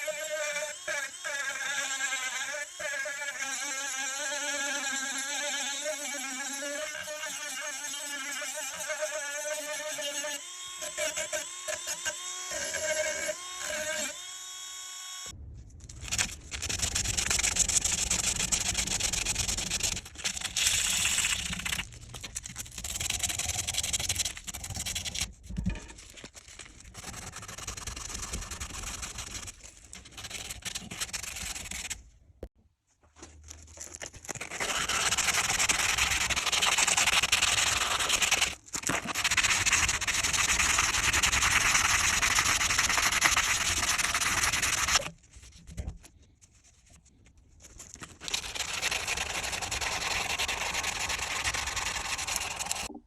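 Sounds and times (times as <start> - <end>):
abrasive sanding on metal: 3.2 - 13.0, 34.5 - 45.1, 48.3 - 52.9.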